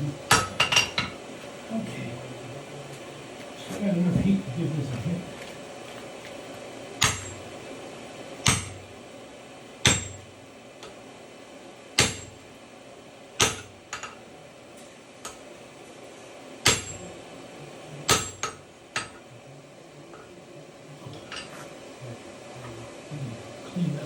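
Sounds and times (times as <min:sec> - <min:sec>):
hammer striking on anvil: 0:00.3 - 0:01.2, 0:07.0 - 0:07.4, 0:08.4 - 0:08.8, 0:09.8 - 0:10.2, 0:12.0 - 0:12.4, 0:13.4 - 0:14.2, 0:16.6 - 0:17.1, 0:18.1 - 0:19.2.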